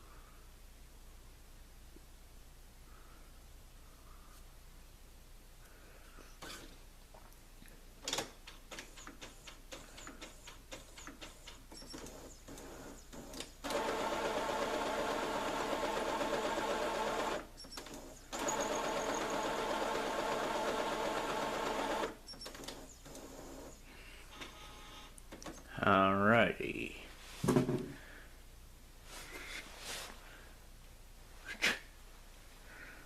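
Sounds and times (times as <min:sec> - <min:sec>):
printer motor buzzing: 0:11.9 - 0:23.8.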